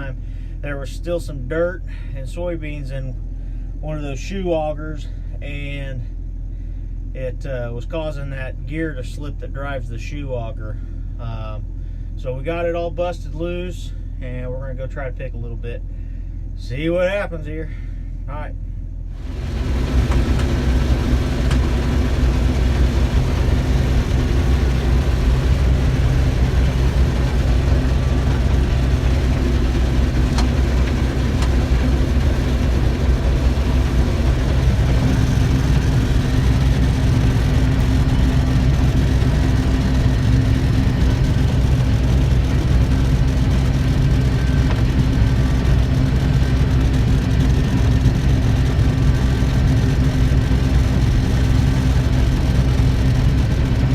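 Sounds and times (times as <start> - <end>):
combine harvester droning: 15.3 - 53.9.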